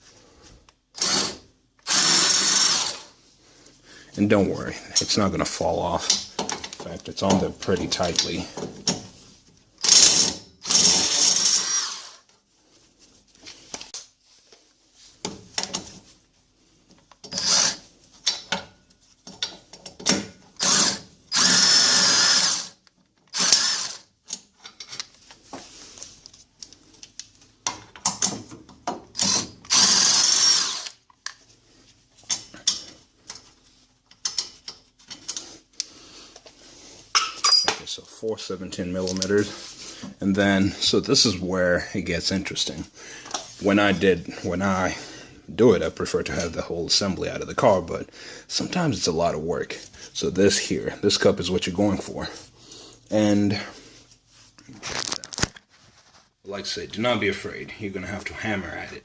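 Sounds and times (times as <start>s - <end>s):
impact wrench whining: 0.9s - 3.2s, 9.8s - 12.3s, 17.2s - 18.5s, 20.0s - 24.2s, 29.0s - 31.1s
tool and bolts clinking: 18.2s - 20.6s, 24.3s - 25.1s, 27.0s - 29.7s, 32.2s - 33.5s, 34.1s - 35.5s, 37.1s - 38.0s.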